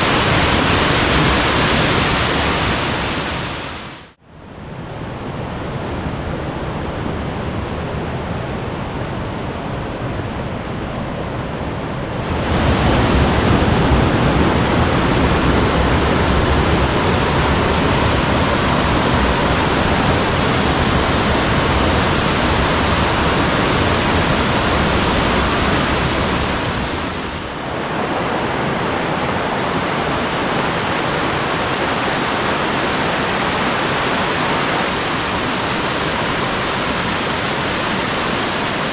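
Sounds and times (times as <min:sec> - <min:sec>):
stream rushing over rocks: 0:00.0 - 0:04.2, 0:12.2 - 0:38.9.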